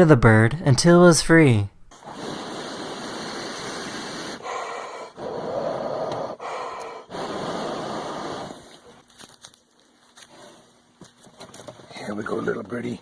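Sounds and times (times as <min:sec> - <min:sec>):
man blowing breathy puffs: 0:01.9 - 0:09.0.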